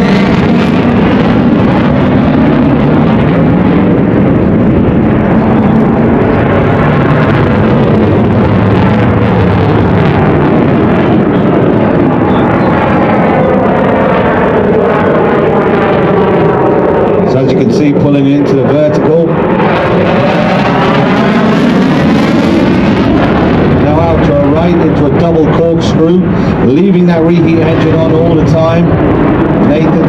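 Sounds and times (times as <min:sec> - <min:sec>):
jet engines roaring: 0:00.0 - 0:30.0.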